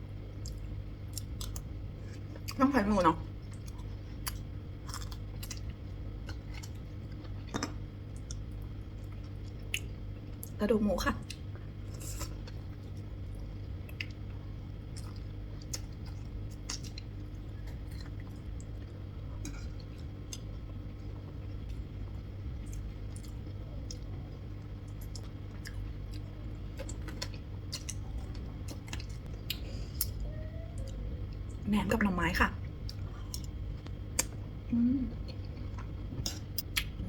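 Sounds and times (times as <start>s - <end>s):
steady low hum: 0.0s - 37.0s
person chewing: 3.5s - 10.5s, 11.3s - 20.6s, 22.5s - 30.2s, 32.8s - 34.4s, 35.0s - 37.0s.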